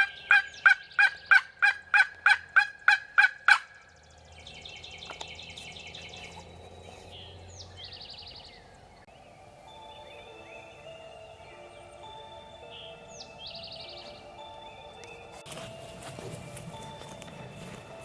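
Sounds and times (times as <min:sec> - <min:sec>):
turkey yelps: 0:00.0 - 0:03.7.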